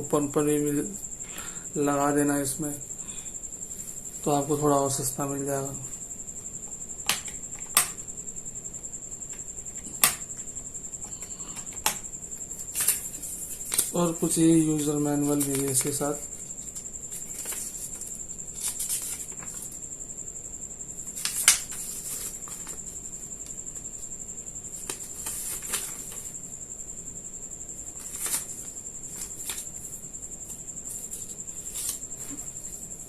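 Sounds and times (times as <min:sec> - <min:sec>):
paper rustling: 0:12.6 - 0:19.8, 0:21.1 - 0:23.0, 0:24.7 - 0:26.4, 0:27.8 - 0:32.8
crinkles and clicks: 0:12.7 - 0:14.0, 0:28.0 - 0:29.7.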